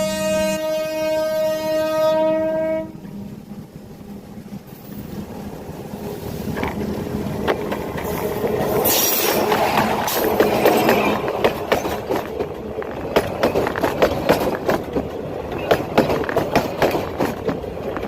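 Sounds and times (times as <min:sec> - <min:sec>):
train horn: 0:00.0 - 0:03.2
train rumble: 0:00.0 - 0:18.0
wheels knocking on rail joints: 0:09.4 - 0:18.0.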